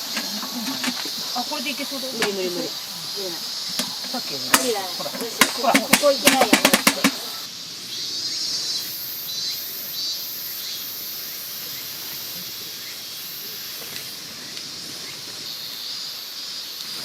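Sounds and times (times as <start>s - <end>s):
mountain stream rushing: 0.0s - 7.7s
insects chirring: 0.0s - 17.0s.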